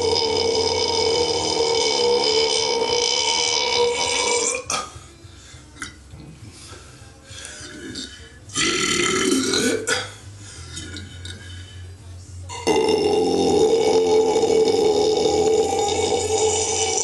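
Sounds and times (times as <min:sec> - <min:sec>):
person belching loudly: 0:00.0 - 0:04.9, 0:07.6 - 0:10.2, 0:12.6 - 0:17.0.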